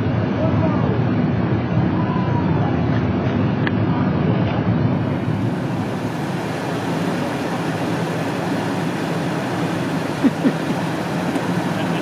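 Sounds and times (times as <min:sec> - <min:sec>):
model train running: 0:05.4 - 0:12.0.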